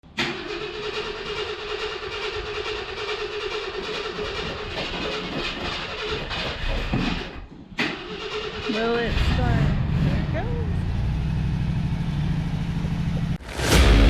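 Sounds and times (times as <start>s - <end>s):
starter cranking car engine: 0.1s - 6.9s, 7.8s - 10.4s.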